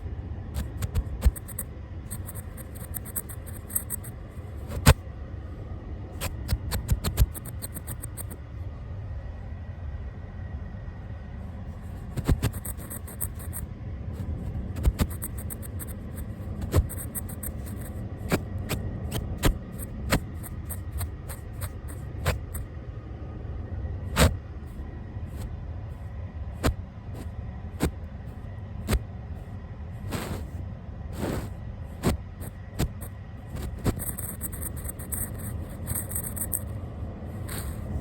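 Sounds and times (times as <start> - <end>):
brush rustling over microphone: 0.6 - 4.9, 6.2 - 8.4, 11.8 - 13.6, 14.2 - 22.6, 31.2 - 36.7
scratchy bristle clicks: 0.6 - 5.0, 6.2 - 8.4, 12.2 - 13.6, 14.7 - 22.6, 31.2 - 36.7, 37.5 - 37.9.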